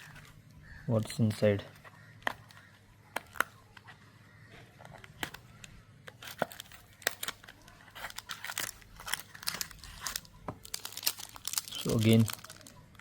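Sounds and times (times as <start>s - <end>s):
wrapper crackling and tearing: 6.1s - 13.0s.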